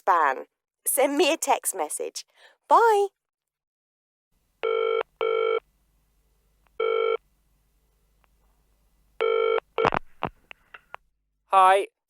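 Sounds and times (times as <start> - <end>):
telephone ringing: 4.6 - 5.6, 6.8 - 7.2, 9.2 - 10.0.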